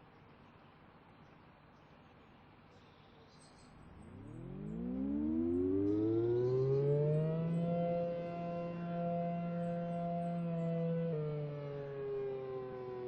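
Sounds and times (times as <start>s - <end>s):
rising warning siren: 3.8s - 13.0s.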